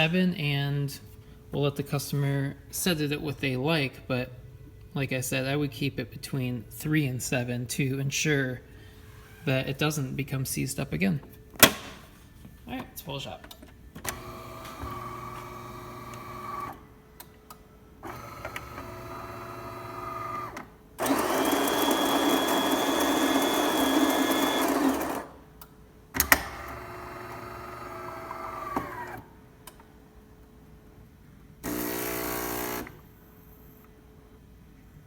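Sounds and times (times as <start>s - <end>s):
pump buzz: 14.1s - 16.8s, 18.0s - 25.4s, 26.5s - 29.2s, 31.6s - 33.0s
motor whirring: 18.0s - 25.3s
coffee grinder grinding beans: 21.0s - 25.1s.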